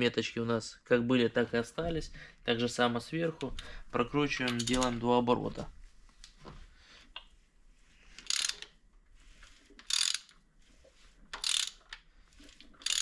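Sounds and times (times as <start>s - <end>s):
ratchet wrench clicking: 8.2s - 8.7s, 9.9s - 10.4s, 11.3s - 12.0s.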